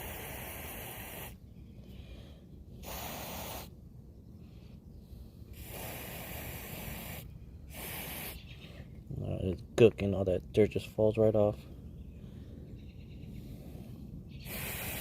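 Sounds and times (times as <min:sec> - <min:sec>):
aerosol can spraying: 0:00.0 - 0:01.4, 0:02.8 - 0:03.7, 0:05.6 - 0:08.4, 0:14.5 - 0:15.0.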